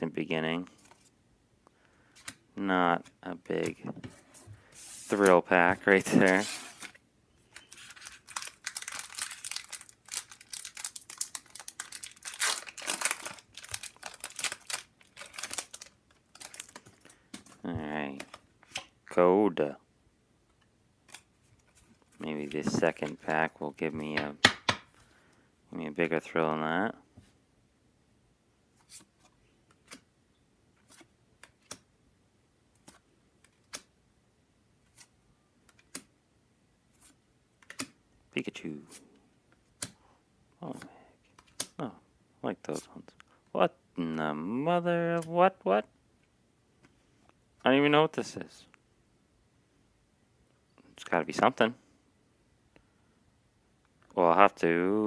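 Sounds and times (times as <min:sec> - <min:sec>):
foil wrapper crinkling: 0:07.6 - 0:17.2.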